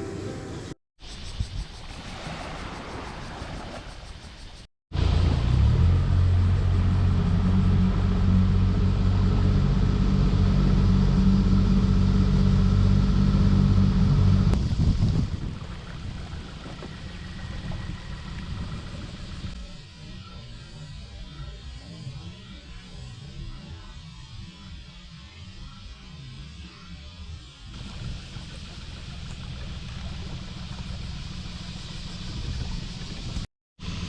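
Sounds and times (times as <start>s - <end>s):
motor engine running: 5.0s - 19.8s, 27.7s - 34.0s.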